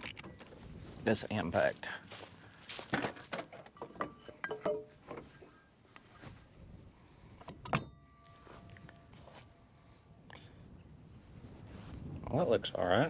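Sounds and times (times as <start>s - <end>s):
metal tools clinking: 0.0s - 0.6s, 3.3s - 5.7s.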